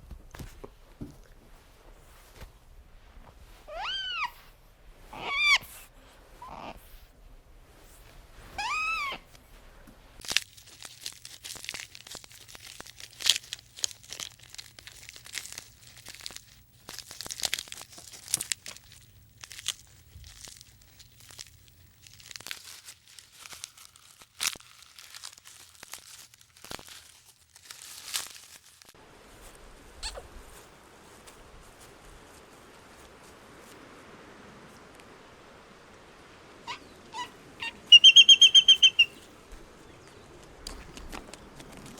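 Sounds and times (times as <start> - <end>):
animal call rising and falling: 3.7 - 4.4, 5.1 - 5.6, 8.6 - 9.2, 36.5 - 39.2
crackling and crunching clicks: 40.1 - 41.9.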